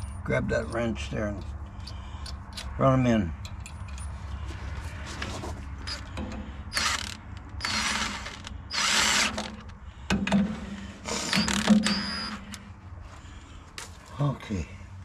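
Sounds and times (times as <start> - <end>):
wrench clicking and whirring: 5.9 - 9.7.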